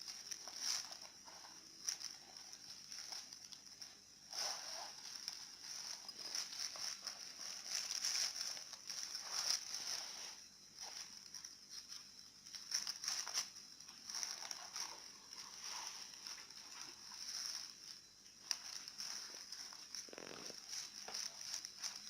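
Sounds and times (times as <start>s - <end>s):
plastic packaging crinkling: 0.0s - 22.0s.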